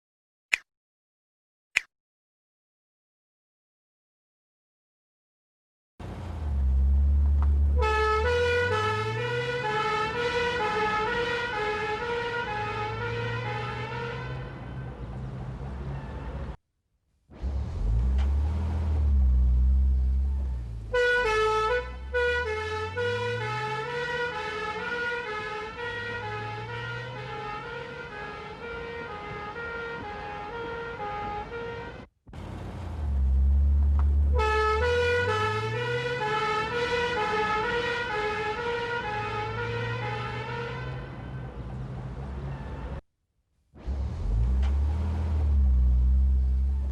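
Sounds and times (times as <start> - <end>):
two-tone police siren: 7.7 - 14.9, 20.3 - 32.0, 34.3 - 41.5
car engine revving: 17.4 - 24.4, 43.8 - 46.9.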